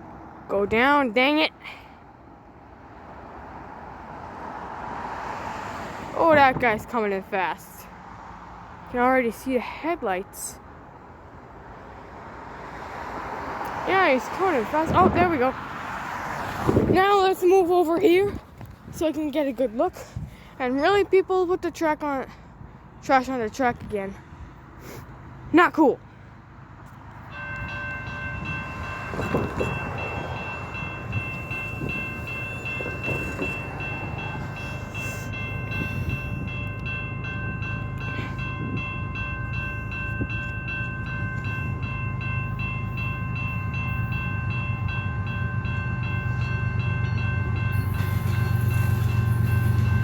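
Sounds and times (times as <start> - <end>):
train rumble: 22.7 - 50.0
level-crossing bells ringing: 27.2 - 50.0.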